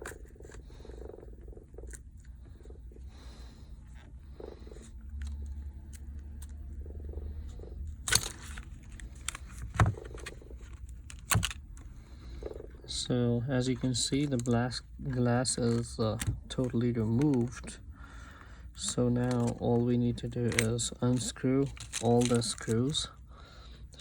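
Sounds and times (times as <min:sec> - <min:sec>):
plastic card scraping glass: 0:00.0 - 0:01.2, 0:07.4 - 0:12.9, 0:13.6 - 0:17.9, 0:18.8 - 0:23.0
low steady hum: 0:00.0 - 0:24.0.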